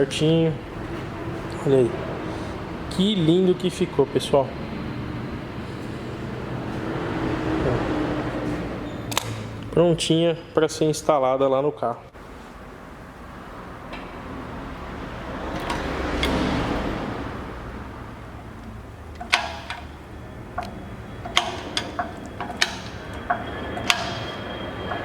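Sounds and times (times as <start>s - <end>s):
metallic clinks and taps: 18.6s - 25.0s.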